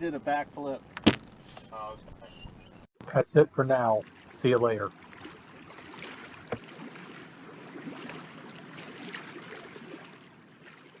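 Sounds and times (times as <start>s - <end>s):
sharp knock: 1.0s - 1.3s
small waves lapping against hull: 3.0s - 11.0s.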